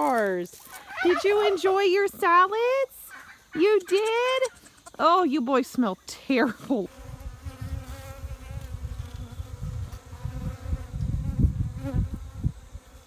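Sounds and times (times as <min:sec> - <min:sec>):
low rumble on microphone: 0:07.1 - 0:12.8.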